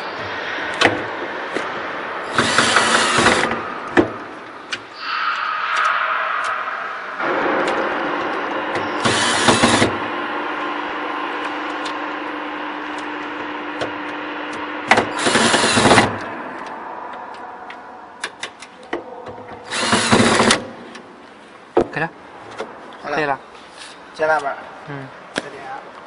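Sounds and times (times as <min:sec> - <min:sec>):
steady hum: 0:00.0 - 0:25.4
power tool bursts: 0:02.3 - 0:03.6, 0:09.0 - 0:10.0, 0:14.9 - 0:16.2, 0:19.7 - 0:20.7.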